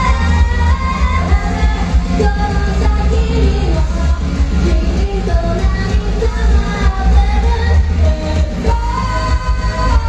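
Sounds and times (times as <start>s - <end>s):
loud live band music: 0.0s - 10.0s.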